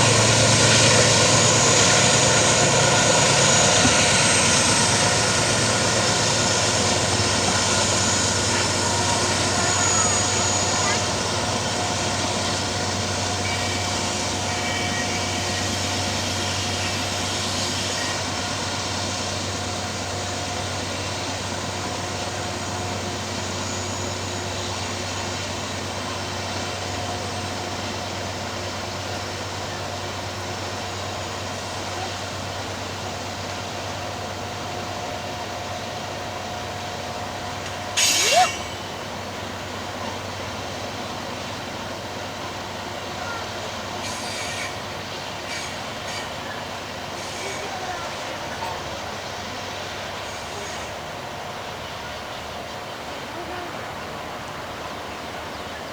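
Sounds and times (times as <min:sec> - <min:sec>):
freight train rail rumble: 0:00.0 - 0:55.9
loud sharp noise: 0:37.9 - 0:39.1.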